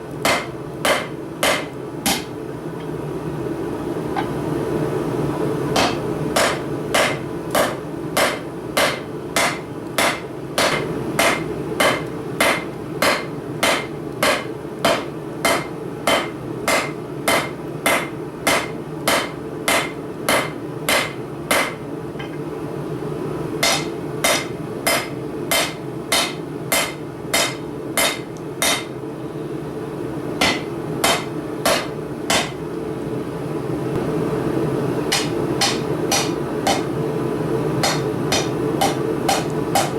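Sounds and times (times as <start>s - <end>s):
hammer striking steel on anvil: 0.2s - 2.9s, 5.8s - 22.4s, 23.6s - 28.9s, 30.4s - 32.6s, 35.1s - 36.9s, 37.8s - 39.9s.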